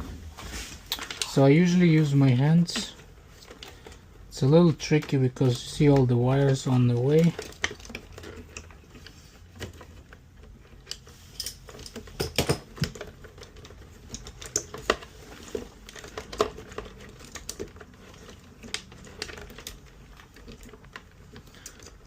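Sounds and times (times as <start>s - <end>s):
hands clicking and knocking: 11.8s - 13.2s.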